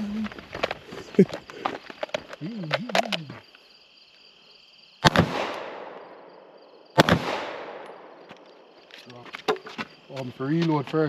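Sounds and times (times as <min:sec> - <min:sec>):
gunshots with echo: 0:05.0 - 0:06.0, 0:07.0 - 0:08.1.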